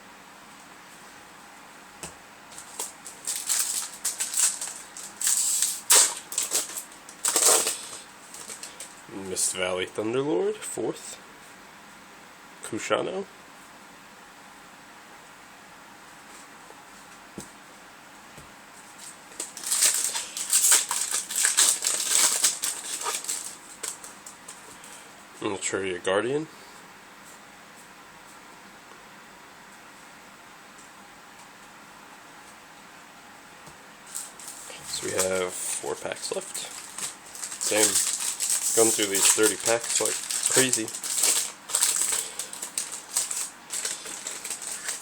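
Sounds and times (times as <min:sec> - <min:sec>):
wrappers crinkling and rustling: 0:02.5 - 0:09.5, 0:18.8 - 0:25.0, 0:34.0 - 0:45.0.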